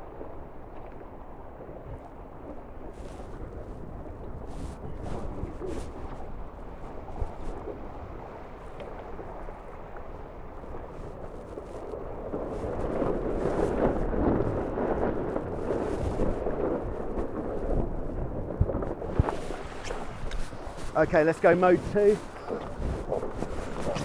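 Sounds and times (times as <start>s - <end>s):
wind and water rushing past boat: 0.0s - 24.0s.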